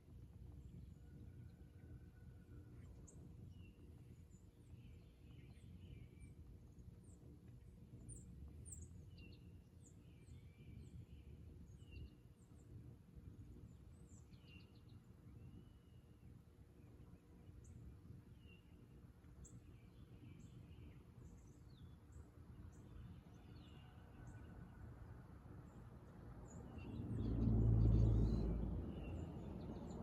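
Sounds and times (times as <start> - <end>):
steady low rumble: 26.1 - 30.0
lower warbling bird calls: 26.8 - 29.3.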